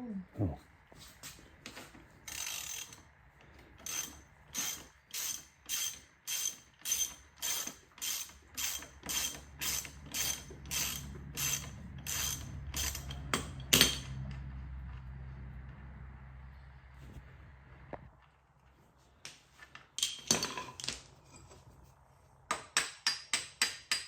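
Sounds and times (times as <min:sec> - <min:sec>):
ratchet wrench clicking: 0:02.3 - 0:03.1, 0:03.8 - 0:14.0.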